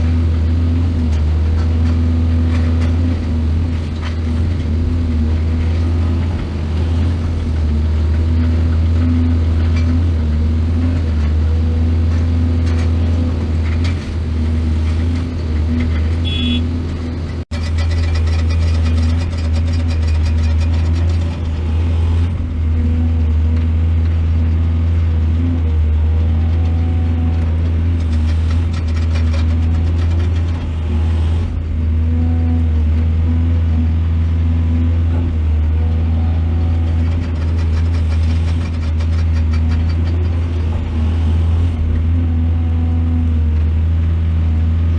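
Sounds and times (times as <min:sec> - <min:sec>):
diesel engine drone: 0:00.0 - 0:44.9
rapid metallic rattling: 0:17.3 - 0:22.4, 0:27.8 - 0:31.5, 0:36.8 - 0:41.8.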